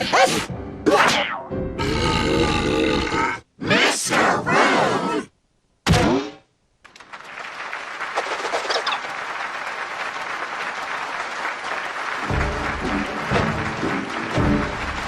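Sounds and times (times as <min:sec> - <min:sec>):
audience applause: 0:06.9 - 0:15.0.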